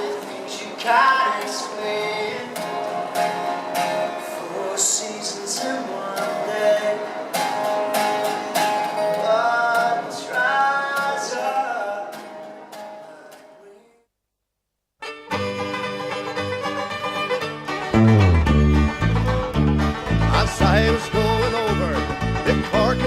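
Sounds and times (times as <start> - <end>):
strummed guitar: 0.0 - 13.7, 15.0 - 23.0
sustained melody line: 17.8 - 23.0.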